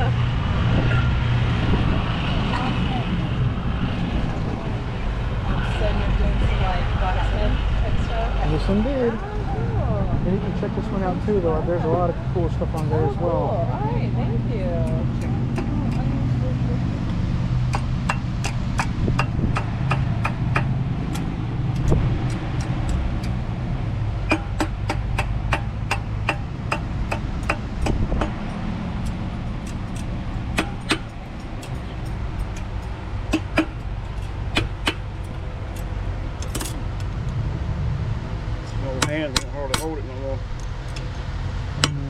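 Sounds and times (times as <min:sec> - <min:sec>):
steady low rumble: 0:00.0 - 0:42.0
hammer striking iron on anvil: 0:17.7 - 0:21.3, 0:24.3 - 0:28.4, 0:29.6 - 0:35.1.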